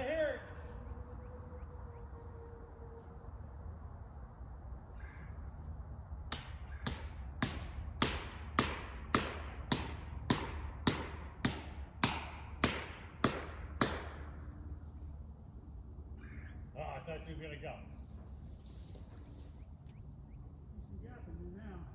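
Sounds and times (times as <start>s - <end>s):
hammer striking wedge: 6.3s - 14.4s.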